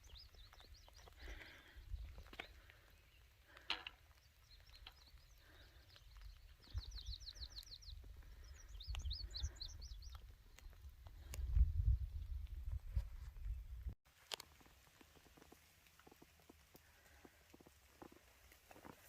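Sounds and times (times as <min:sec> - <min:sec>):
songbird trilling and twittering: 0:04.1 - 0:10.8.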